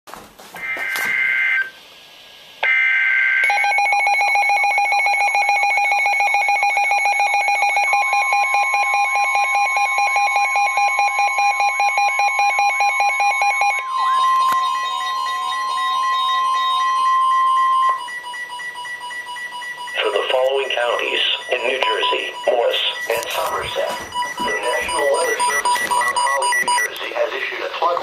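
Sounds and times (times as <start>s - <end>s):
steady attention tone: 0.6s - 1.8s, 11.6s - 28.0s
rapidly pulsing electronic alert tone: 3.5s - 27.3s
screeching digital data bursts: 12.2s - 27.0s.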